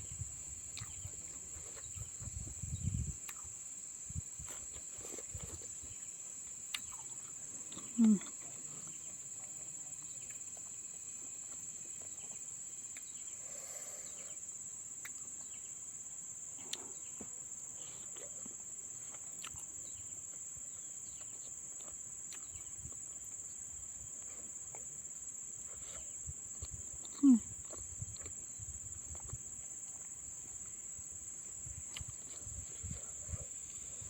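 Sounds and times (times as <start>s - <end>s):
insects trilling: 0.0s - 34.0s.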